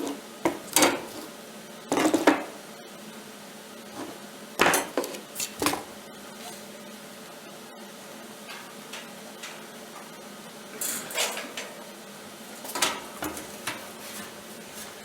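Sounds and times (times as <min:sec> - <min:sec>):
steel parts clanking: 0:10.8 - 0:11.9, 0:12.6 - 0:14.4.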